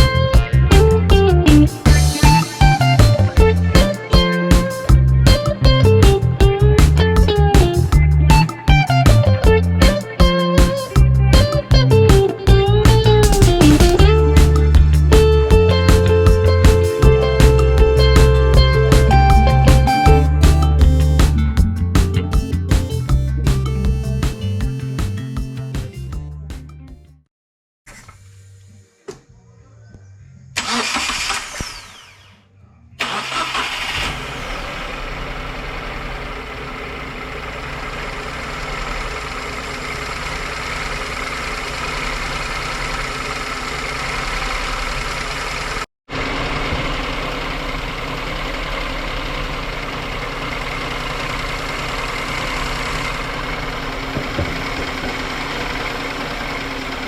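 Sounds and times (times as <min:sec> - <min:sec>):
engine idling: 0:00.0 - 0:25.2, 0:33.0 - 0:57.0
engine starter cranking: 0:30.6 - 0:32.3, 0:33.0 - 0:57.0.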